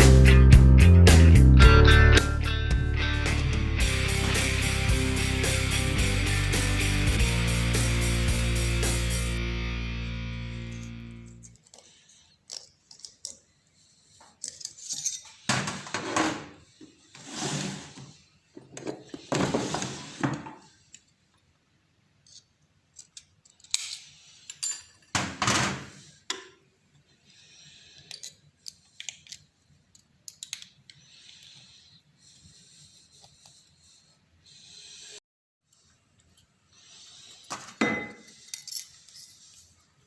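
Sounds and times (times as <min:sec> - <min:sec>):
metal scraping strokes: 0:03.7 - 0:09.4, 0:16.7 - 0:18.2, 0:31.0 - 0:35.2, 0:36.7 - 0:39.9
metal tools clinking: 0:14.4 - 0:15.4, 0:23.0 - 0:25.1, 0:37.8 - 0:39.8.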